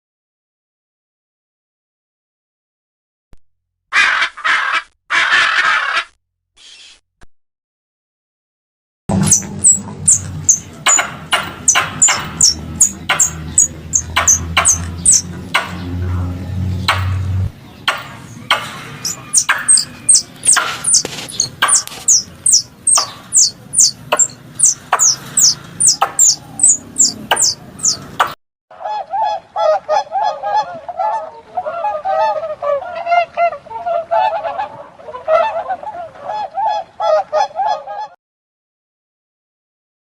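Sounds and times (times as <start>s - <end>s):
high falling animal squeaks: 9.1s - 11.0s, 18.9s - 28.0s
chorus of wavering animal calls: 9.1s - 16.6s, 18.3s - 28.2s.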